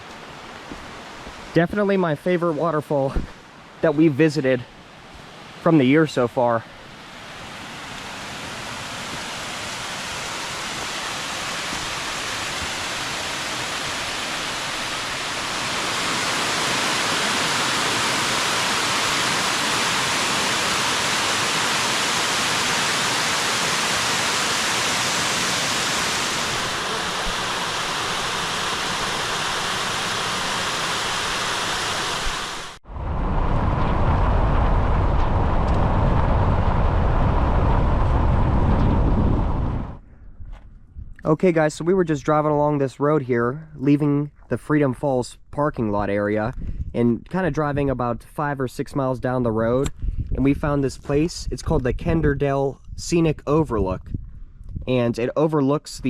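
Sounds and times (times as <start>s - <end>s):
waterfall rushing: 7.1s - 32.8s.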